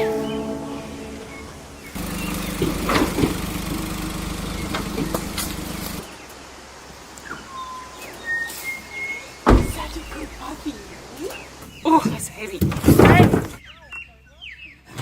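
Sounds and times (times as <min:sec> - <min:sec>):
short high chirps: 0:00.0 - 0:02.0
engine humming: 0:00.0 - 0:06.1.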